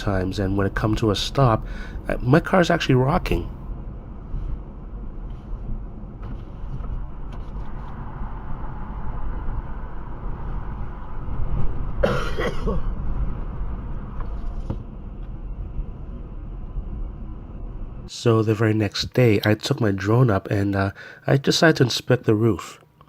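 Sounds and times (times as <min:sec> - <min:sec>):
wind and road noise rumble: 0:00.0 - 0:18.1.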